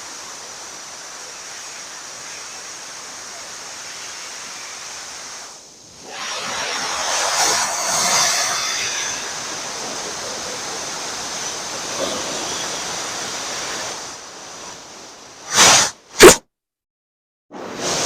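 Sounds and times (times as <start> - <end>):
balloon bursting bang: 16.2 - 16.4.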